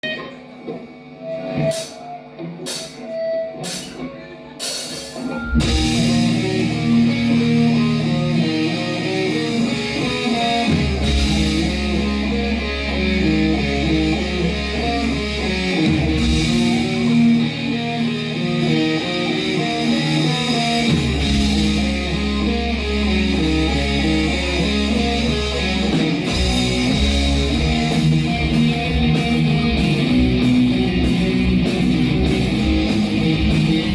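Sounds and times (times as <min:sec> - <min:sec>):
heavy metal band playing: 0:00.0 - 0:33.9.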